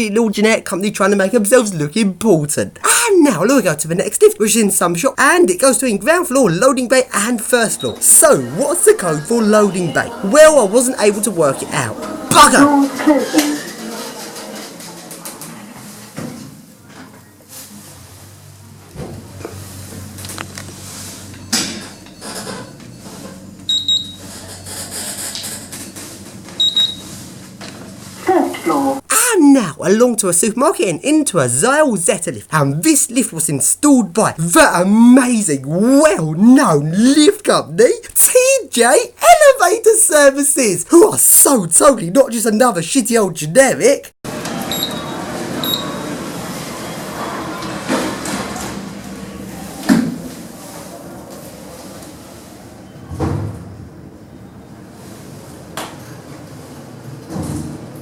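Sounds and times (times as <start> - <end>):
lift button panel beeping: 44.7 - 46.0.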